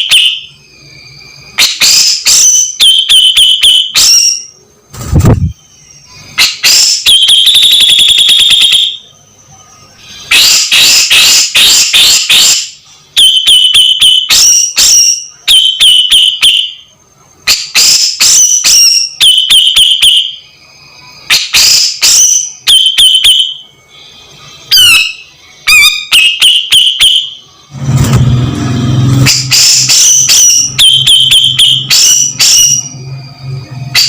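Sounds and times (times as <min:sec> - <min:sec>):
bird calling high notes: 0:18.7 - 0:27.5.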